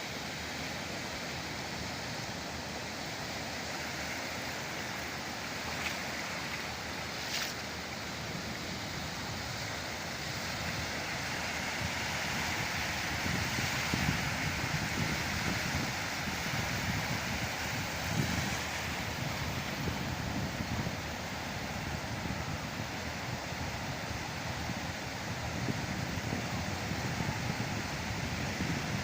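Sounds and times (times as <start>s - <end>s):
wind on microphone: 11.8s - 29.0s.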